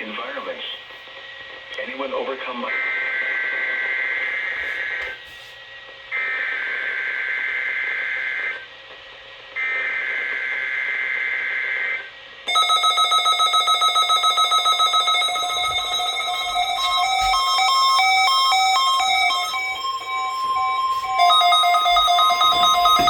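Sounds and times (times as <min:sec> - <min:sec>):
pulsing multi-tone alarm: 0:09.6 - 0:23.0.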